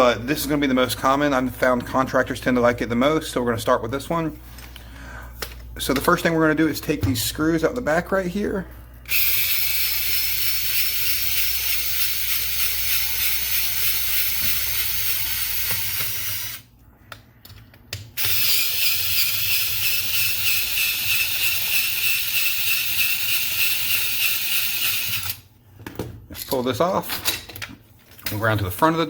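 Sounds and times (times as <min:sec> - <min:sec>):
cordless drill running: 0:09.1 - 0:16.7, 0:18.2 - 0:25.4.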